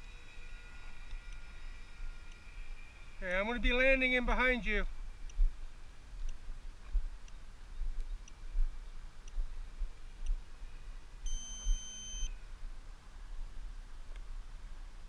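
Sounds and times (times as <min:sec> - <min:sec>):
faint ticks: 0:01.0 - 0:02.5, 0:05.2 - 0:12.4
electronic beep: 0:11.2 - 0:12.4.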